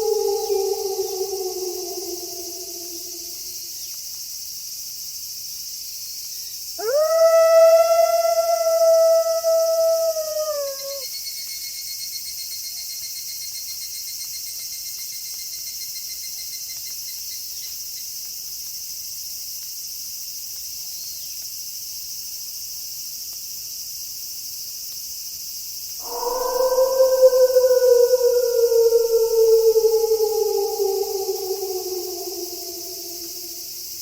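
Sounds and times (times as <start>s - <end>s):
wolf howling: 0.0s - 3.7s, 6.8s - 11.0s, 26.0s - 34.0s
crickets chirping: 0.0s - 4.0s, 6.4s - 11.2s, 26.0s - 34.0s.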